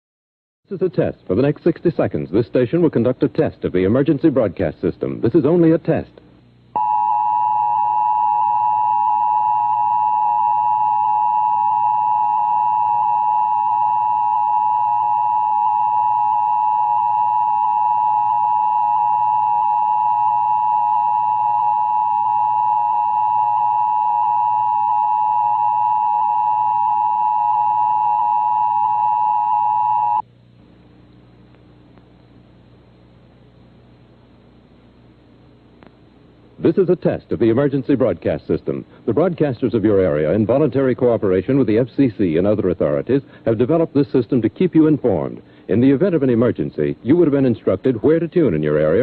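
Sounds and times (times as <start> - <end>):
two-tone alarm signal: 6.8 - 30.2.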